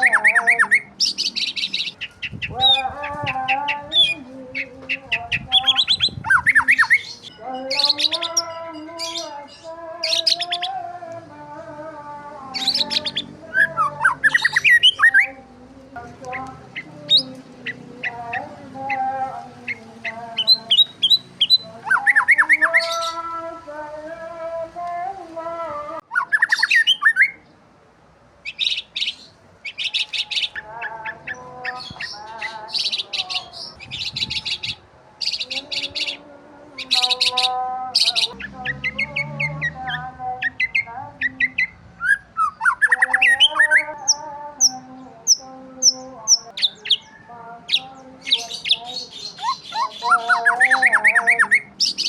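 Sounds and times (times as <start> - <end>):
harsh rasping high bird call: 0.0 - 10.8, 12.5 - 15.4, 26.0 - 27.4, 36.8 - 52.0
birds chirping and calling: 0.0 - 27.6, 28.4 - 52.0.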